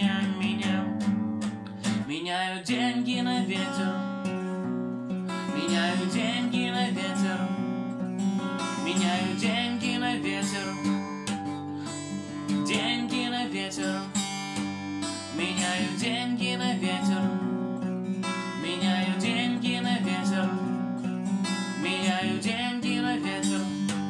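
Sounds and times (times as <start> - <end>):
strummed acoustic guitar: 0.0 - 24.0
wavering high melody: 8.6 - 16.0.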